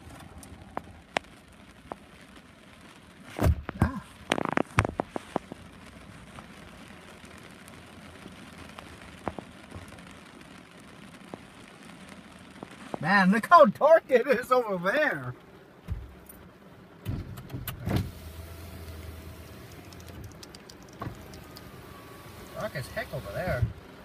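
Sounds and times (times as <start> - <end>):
heavy rain: 0.0 - 24.0
low thump: 3.4 - 3.8, 15.9 - 16.2.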